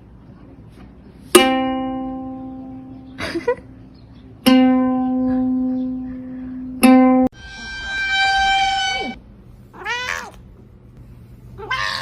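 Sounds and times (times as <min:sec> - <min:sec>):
plucked string instrument notes: 0:01.3 - 0:03.1, 0:04.4 - 0:09.2.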